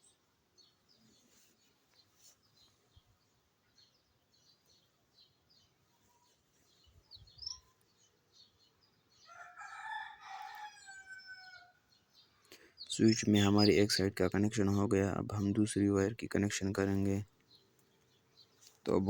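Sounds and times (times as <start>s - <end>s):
small birds chirping faintly: 0.0s - 19.0s
rooster crowing: 9.2s - 11.9s.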